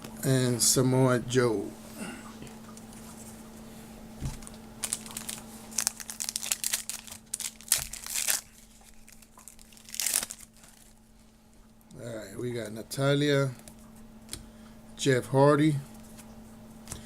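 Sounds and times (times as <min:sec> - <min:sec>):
plastic wrapper tearing and crinkling: 0:04.2 - 0:11.0.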